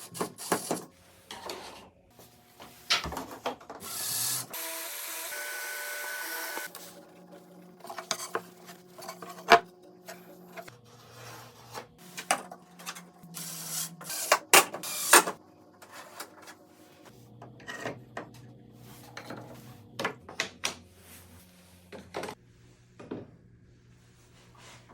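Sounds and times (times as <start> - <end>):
power tool whining: 3.8 - 6.8
wooden pieces and tools clattering: 7.8 - 13.2.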